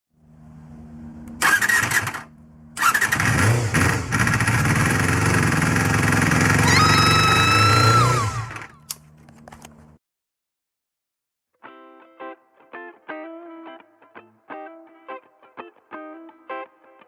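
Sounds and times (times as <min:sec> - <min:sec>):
high engine whine: 0:00.1 - 0:10.0
motorcycle engine starting: 0:00.5 - 0:09.0.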